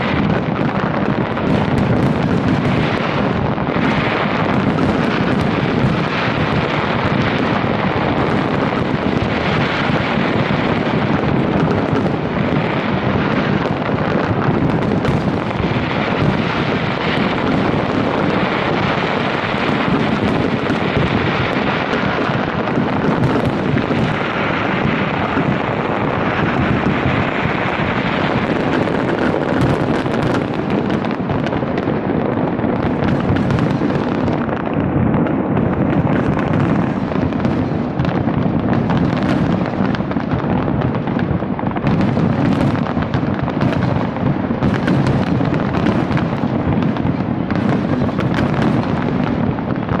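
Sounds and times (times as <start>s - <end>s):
fireworks barrage: 0.0s - 50.0s.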